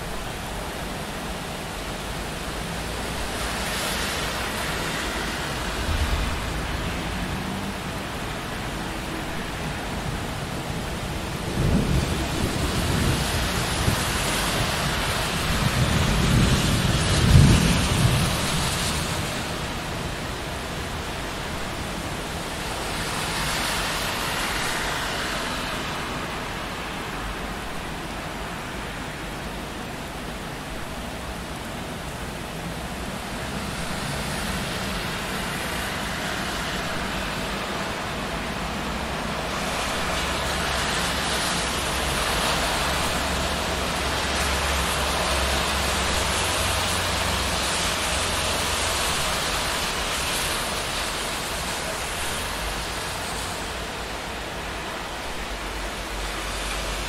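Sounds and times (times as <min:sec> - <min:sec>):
steady rain on street: 0:00.0 - 0:57.0
tyre hiss on wet road: 0:00.0 - 0:57.0
vehicle passing with deep rumble: 0:05.1 - 0:08.9.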